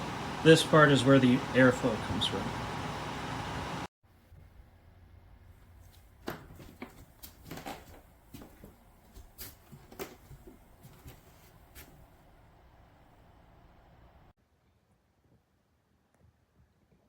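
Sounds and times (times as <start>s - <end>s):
low steady hum: 10.4s - 14.3s.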